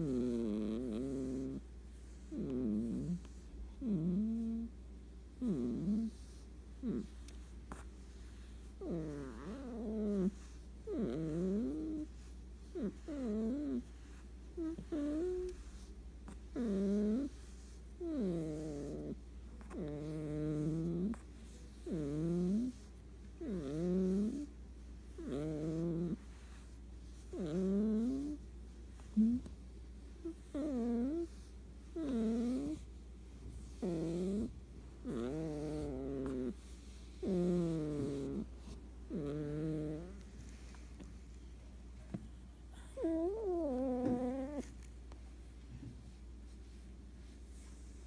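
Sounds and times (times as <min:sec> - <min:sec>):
cat snoring: 0:00.0 - 0:01.6, 0:02.2 - 0:04.7, 0:05.4 - 0:24.5, 0:25.1 - 0:28.4, 0:29.0 - 0:29.5, 0:30.2 - 0:32.9, 0:33.6 - 0:40.2, 0:42.7 - 0:44.7.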